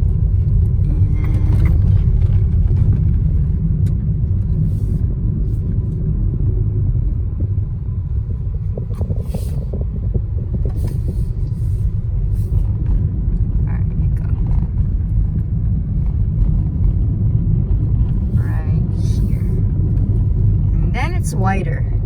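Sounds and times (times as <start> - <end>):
car engine and tyres rumbling: 0.0 - 22.0
light rattles and knocks: 7.3 - 18.4.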